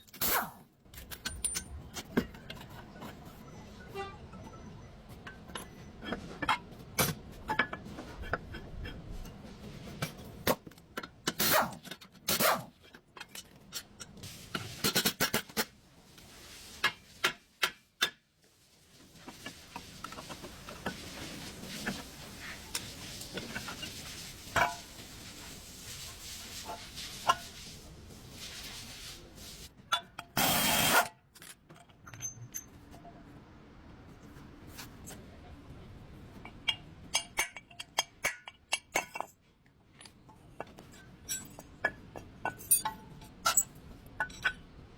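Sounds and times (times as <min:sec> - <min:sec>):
metallic clanks of hand tools: 0:40.0 - 0:44.6.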